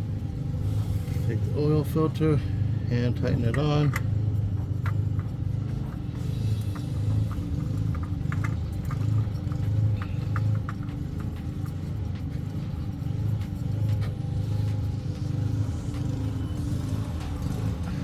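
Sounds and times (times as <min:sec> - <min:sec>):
metal oil filter clicks and scrapes: 0:03.2 - 0:12.6.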